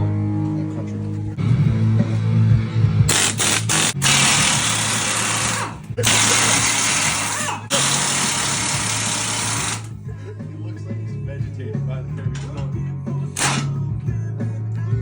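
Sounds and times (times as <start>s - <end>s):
handheld power tool running: 3.1s - 9.9s.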